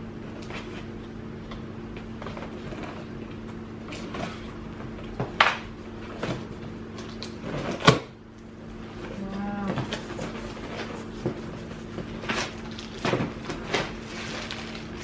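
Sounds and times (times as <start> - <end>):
steady low hum: 0.0 - 15.0
packaging rustling and scraping: 9.7 - 15.0.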